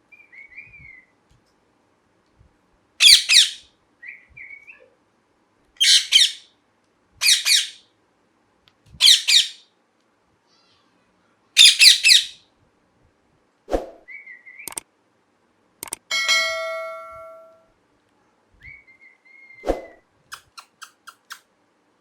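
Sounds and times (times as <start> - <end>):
parakeet screeching calls: 3.0 - 3.6, 5.8 - 6.5, 7.2 - 7.8, 9.0 - 9.6, 11.6 - 12.4.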